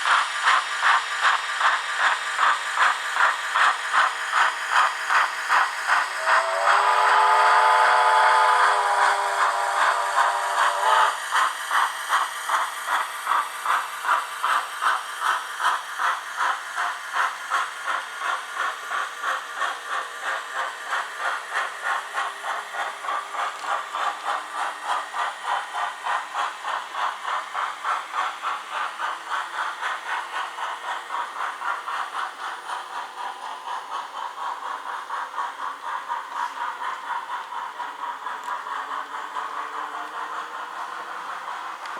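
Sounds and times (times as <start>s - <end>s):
locomotive exhaust chuffs with hiss: 0.0s - 41.9s
steam whistle: 6.0s - 11.2s.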